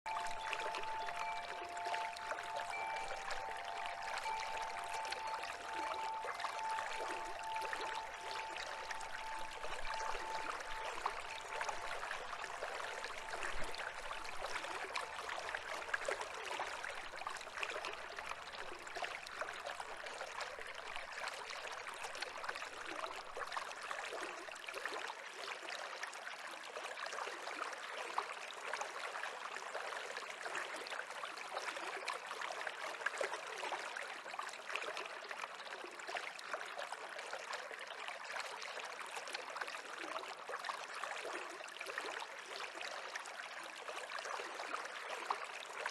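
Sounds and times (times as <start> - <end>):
stream babbling: 0.1 - 26.1.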